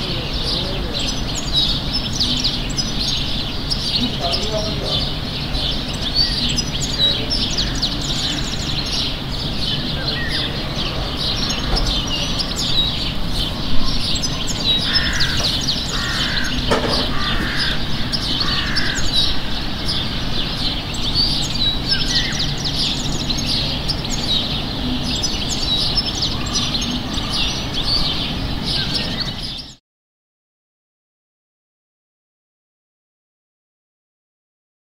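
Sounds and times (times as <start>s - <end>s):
low city hum: 0.0s - 29.2s
small songbirds chirping: 0.0s - 29.8s
crow cawing: 14.6s - 20.0s
sharp knock: 16.7s - 17.5s.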